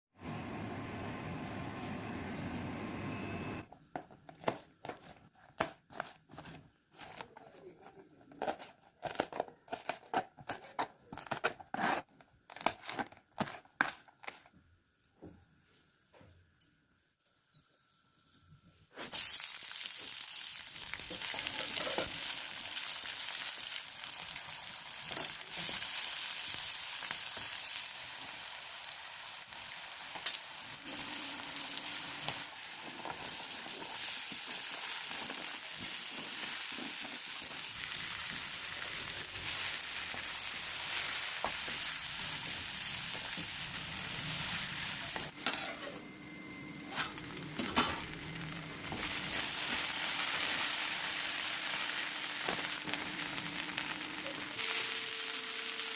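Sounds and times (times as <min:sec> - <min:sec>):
okra sizzling in oil: 0:18.9 - 0:45.8, 0:46.8 - 0:55.9.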